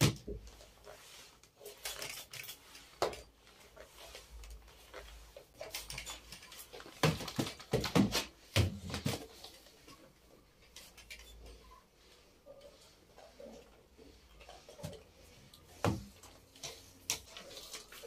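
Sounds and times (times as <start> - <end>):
household objects knocking and clattering: 5.9 - 9.2.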